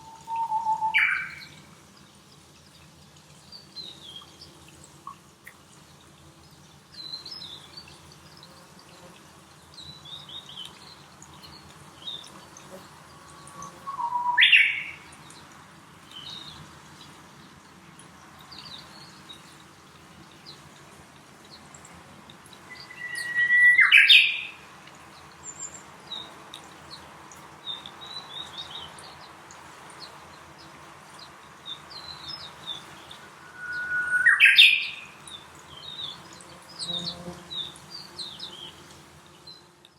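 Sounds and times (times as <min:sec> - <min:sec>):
soft high bird chirps: 0:00.0 - 0:01.6, 0:13.6 - 0:15.1, 0:22.7 - 0:24.6, 0:31.7 - 0:36.2
loud rising bird calls: 0:33.4 - 0:35.1.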